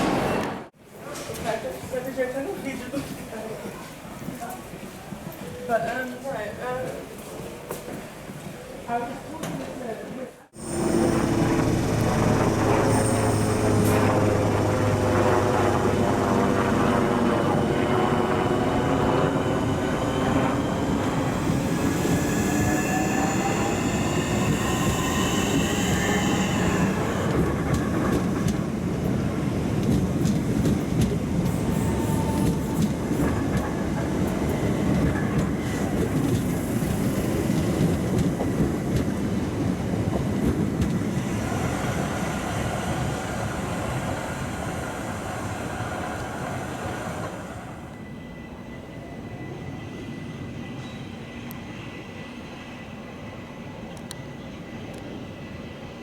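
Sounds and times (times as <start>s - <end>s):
train wheels rumbling: 10.6s - 48.5s
electric train whine: 10.6s - 56.0s.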